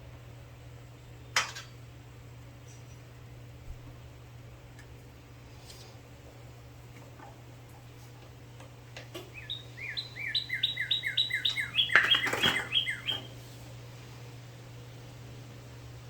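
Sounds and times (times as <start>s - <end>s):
bird chirping: 9.2s - 13.4s.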